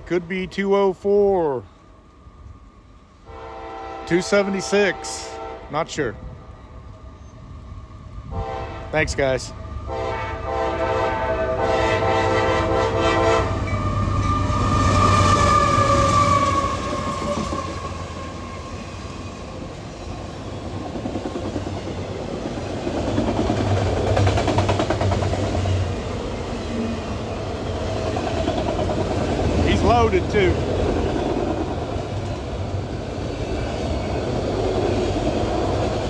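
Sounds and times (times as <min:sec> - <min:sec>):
freight train rumbling and rattling: 0:02.0 - 0:36.0
locomotive air horn: 0:03.2 - 0:05.9, 0:08.3 - 0:09.1, 0:09.9 - 0:17.7.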